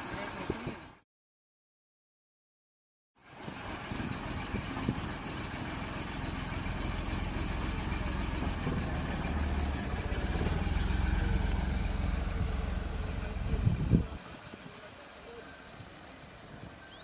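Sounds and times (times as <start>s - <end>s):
car engine idling: 3.2s - 15.4s.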